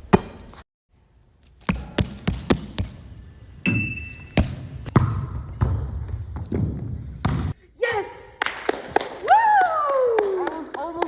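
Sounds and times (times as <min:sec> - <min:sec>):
ball slaps and thuds: 0:04.4 - 0:07.6.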